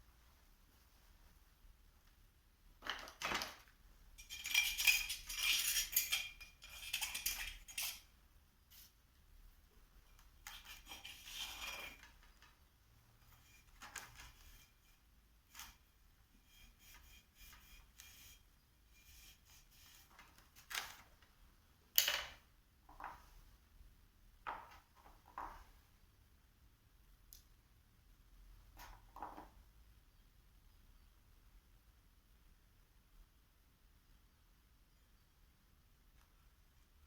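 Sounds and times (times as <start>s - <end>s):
metal tools clinking: 4.2s - 8.1s.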